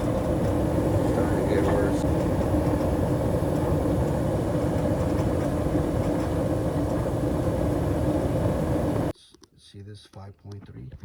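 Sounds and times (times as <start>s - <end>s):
furnace blower motor rumbling: 0.0s - 9.1s.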